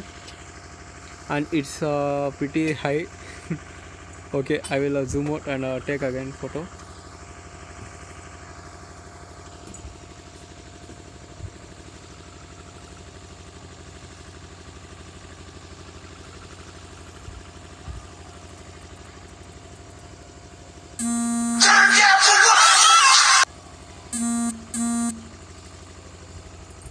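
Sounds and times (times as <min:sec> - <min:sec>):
short beeping tone: 0:21.0 - 0:22.1, 0:24.2 - 0:25.4.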